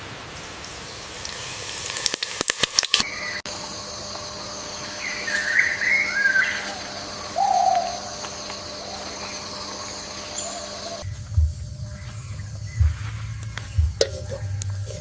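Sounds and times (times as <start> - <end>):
faint hum: 3.0 - 15.0.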